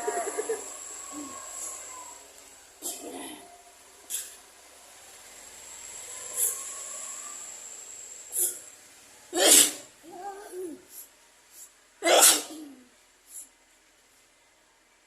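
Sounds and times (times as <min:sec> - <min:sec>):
person sneezing: 0:09.4 - 0:09.8, 0:12.0 - 0:12.8.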